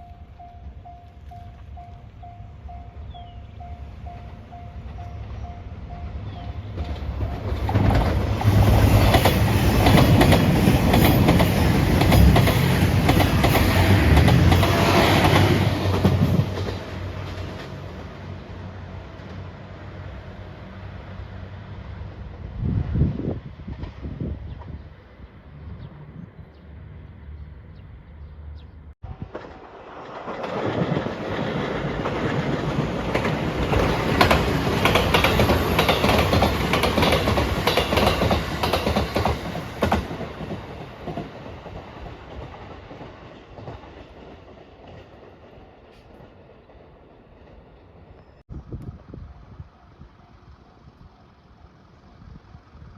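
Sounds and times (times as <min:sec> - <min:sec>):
train passing: 0:00.0 - 0:52.9
wheels clacking over rail joints: 0:03.6 - 0:18.4, 0:29.1 - 0:48.2.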